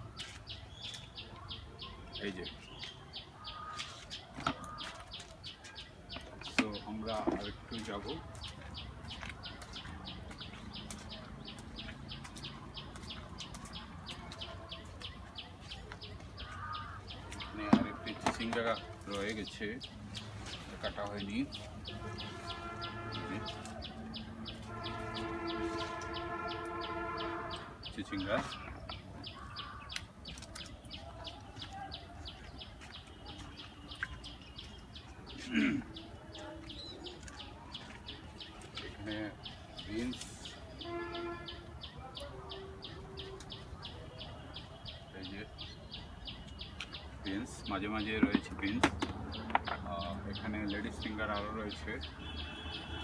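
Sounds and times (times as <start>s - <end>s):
bird chirping: 0.0s - 53.0s.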